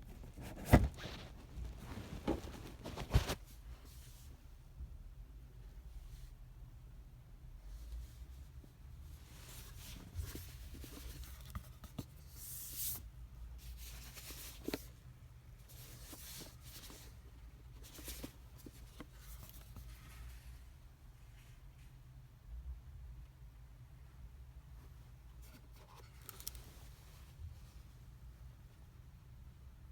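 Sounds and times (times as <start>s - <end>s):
packaging rustling and scraping: 0.0s - 3.5s, 25.4s - 27.0s.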